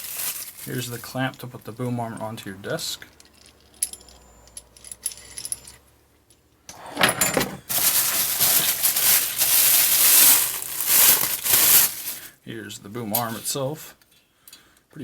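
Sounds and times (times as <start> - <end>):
packaging rustling: 0.0 - 1.2, 7.6 - 12.3
metal parts clinking: 0.0 - 12.3.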